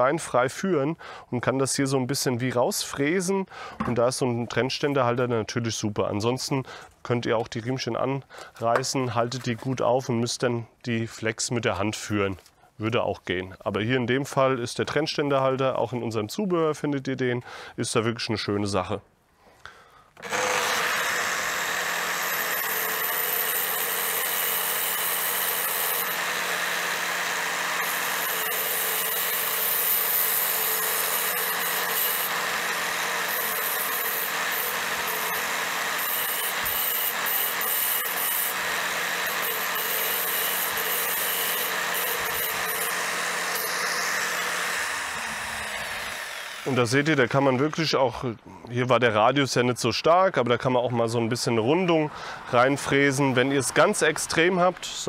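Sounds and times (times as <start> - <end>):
angle grinder cutting brick: 20.2 - 48.2.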